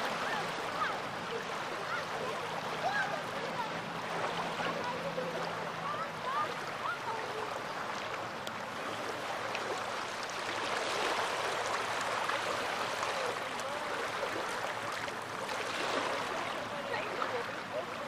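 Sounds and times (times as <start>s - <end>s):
small waves washing on shore: 0.0s - 18.0s.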